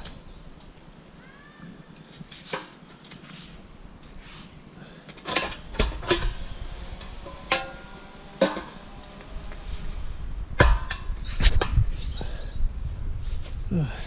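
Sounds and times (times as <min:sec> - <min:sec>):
scrap metal clanking: 0:05.2 - 0:09.9.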